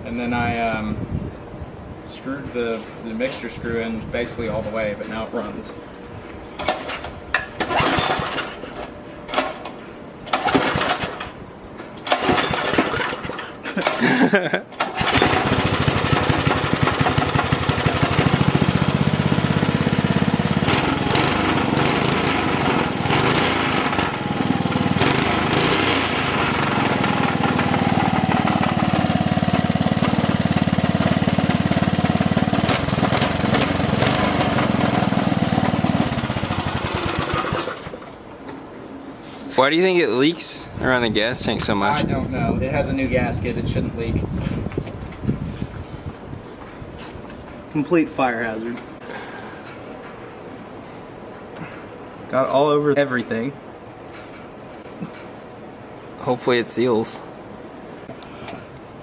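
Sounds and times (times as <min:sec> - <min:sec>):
small engine sputtering and running: 0:07.6 - 0:08.6, 0:12.1 - 0:14.1, 0:14.8 - 0:38.1.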